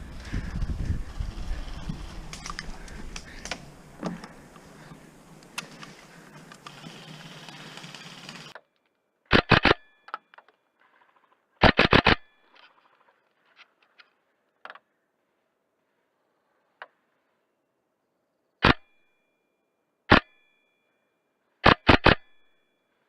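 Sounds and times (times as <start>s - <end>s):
faint clicks and cracks: 2.3s - 6.8s
airsoft gun shots: 21.6s - 22.3s.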